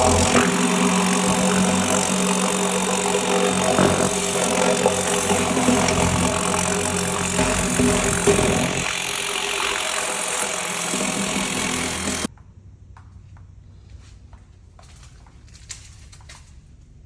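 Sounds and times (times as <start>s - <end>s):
motor humming: 0.0s - 12.3s.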